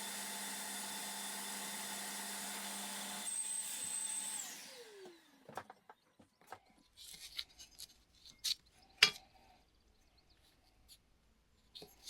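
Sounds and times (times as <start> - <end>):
light clicks and rubbing: 6.5 - 9.3.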